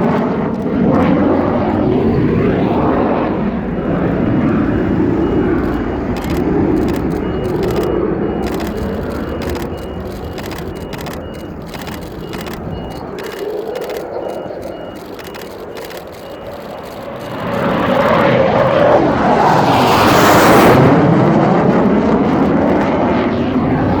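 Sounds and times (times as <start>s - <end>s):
jet flying past: 0.0s - 24.0s.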